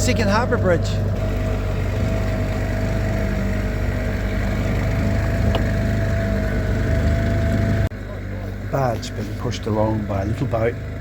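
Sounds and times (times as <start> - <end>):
outboard motor running: 0.0 - 11.0.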